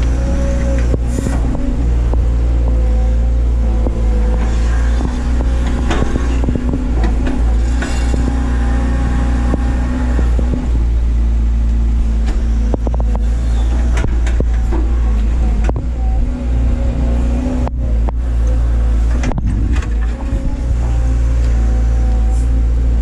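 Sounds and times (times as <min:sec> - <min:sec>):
excavator diesel engine: 0:00.0 - 0:23.0
knocks and clanks: 0:03.7 - 0:08.6, 0:12.2 - 0:15.9, 0:19.0 - 0:21.0.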